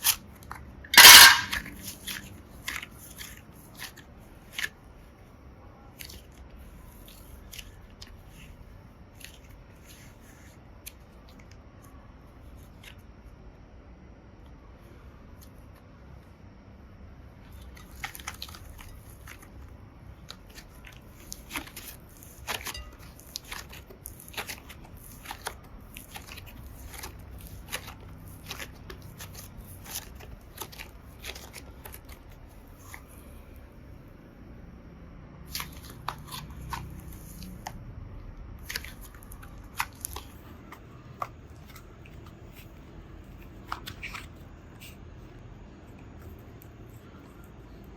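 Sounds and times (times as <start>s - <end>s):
slime squishing with crackling pops: 17.4s - 33.5s, 38.6s - 44.9s.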